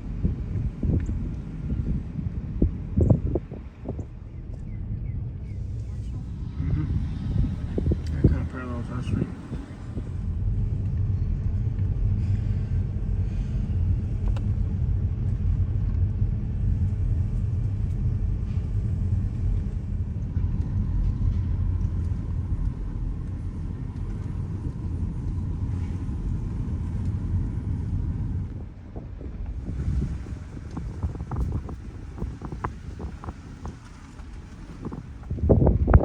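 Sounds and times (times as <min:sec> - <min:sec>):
car engine and road rumble: 0:00.0 - 0:36.0.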